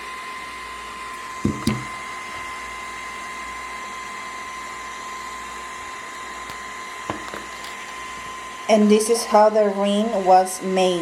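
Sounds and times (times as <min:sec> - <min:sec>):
printer fan whirring: 0:00.7 - 0:11.0.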